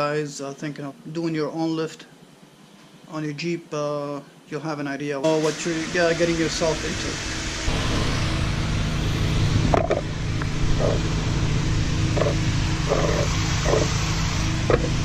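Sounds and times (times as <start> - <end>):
vehicle engine idling: 5.5 - 15.0.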